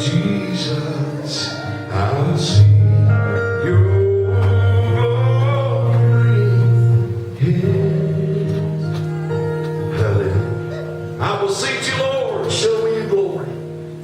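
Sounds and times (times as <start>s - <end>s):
man singing gospel song: 0.0s - 13.8s
instrumental accompaniment: 0.0s - 14.0s.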